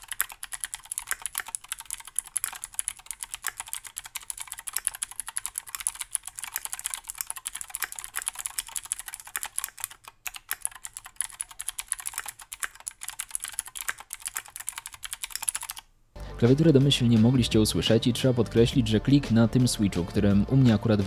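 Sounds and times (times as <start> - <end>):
mechanical keyboard typing clicks: 0.0 - 15.9.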